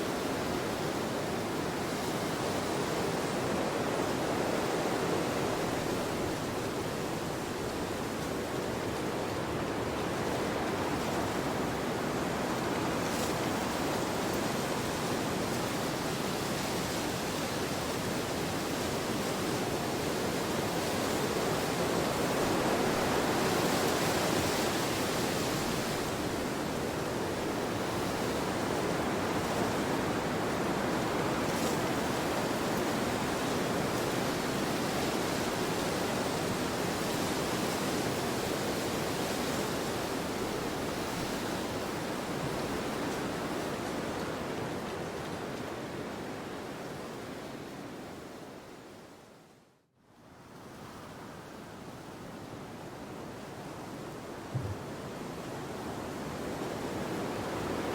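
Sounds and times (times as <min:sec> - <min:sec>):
wind blowing: 0:54.6 - 0:55.2.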